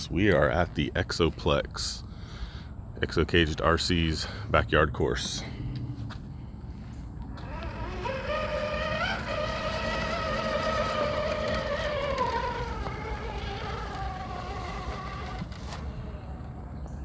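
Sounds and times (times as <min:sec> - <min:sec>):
rc truck motor whining: 0:07.2 - 0:17.0.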